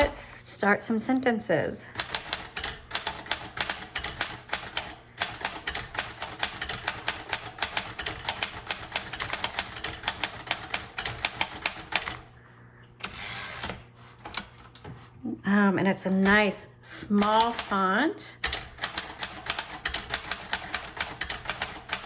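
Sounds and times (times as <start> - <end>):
typewriter keys striking: 2.0 - 12.3, 17.2 - 17.8, 18.4 - 22.0.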